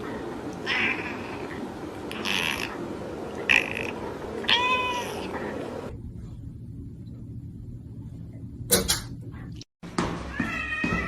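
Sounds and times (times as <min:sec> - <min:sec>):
cat meowing: 0:03.5 - 0:05.3.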